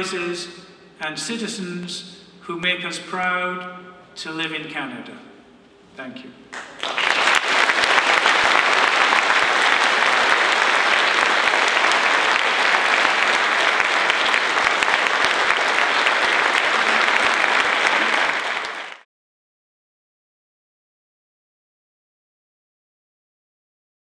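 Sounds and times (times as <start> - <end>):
audience applauding: 6.5 - 19.1.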